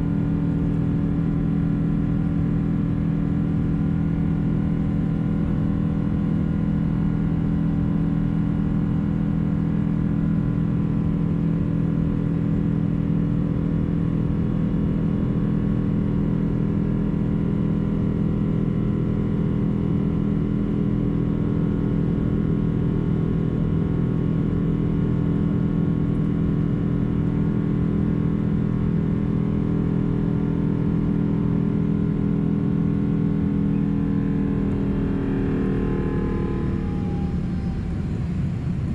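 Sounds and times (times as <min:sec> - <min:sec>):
jet engines rumbling in cabin: 0:36.7 - 0:38.9.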